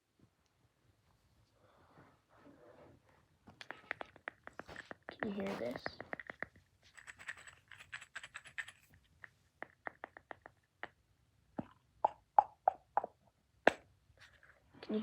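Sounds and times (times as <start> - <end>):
crackly clicks: 3.5 - 11.0.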